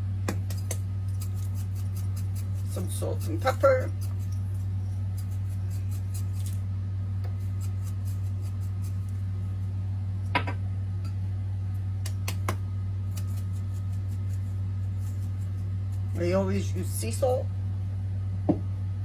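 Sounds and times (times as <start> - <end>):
steady low hum: 0.0 - 19.0
salt and pepper shaker clicks: 12.0 - 13.8.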